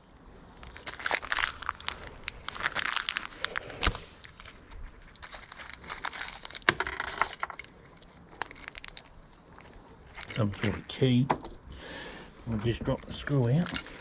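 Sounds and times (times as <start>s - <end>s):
plastic packaging crinkling: 0.5s - 11.1s.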